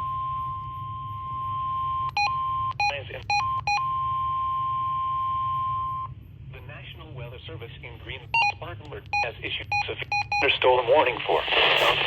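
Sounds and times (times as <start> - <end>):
steady warning alarm tone: 0.0 - 6.4
garbled burst: 11.3 - 12.0.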